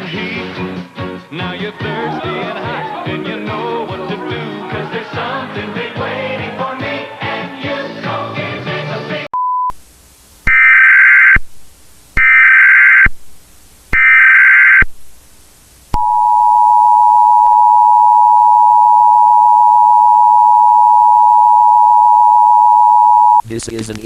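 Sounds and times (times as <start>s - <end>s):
data bursts: 10.5s - 11.5s, 12.2s - 13.2s, 13.9s - 15.0s
two-tone attention signal: 14.0s - 14.8s.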